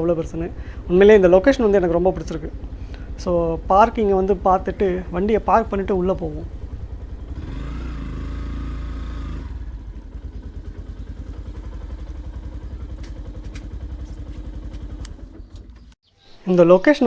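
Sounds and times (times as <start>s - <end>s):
motorcycle engine idling: 0.0s - 16.2s.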